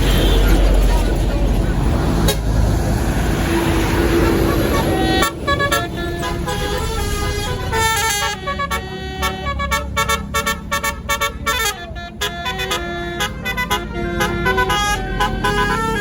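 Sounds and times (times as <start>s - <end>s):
bus engine rumble: 0.0s - 16.0s
bus horn playing melody: 4.1s - 16.0s.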